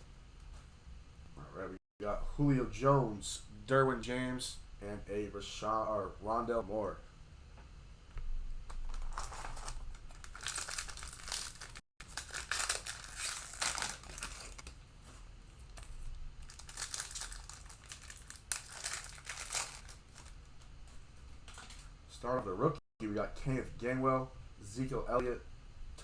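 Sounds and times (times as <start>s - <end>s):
cellophane wrapper tearing and crinkling: 8.8s - 14.8s, 16.4s - 20.4s.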